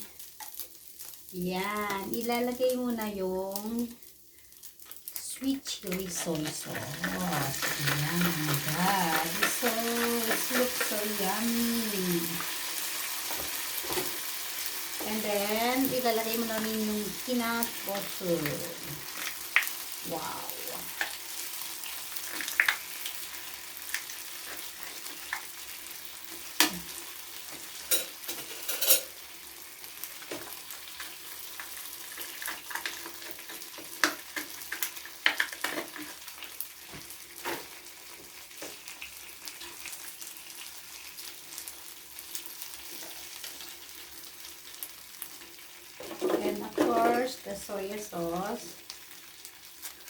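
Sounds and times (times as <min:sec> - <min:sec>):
spoon clinking and scraping bowl: 0:27.8 - 0:29.2.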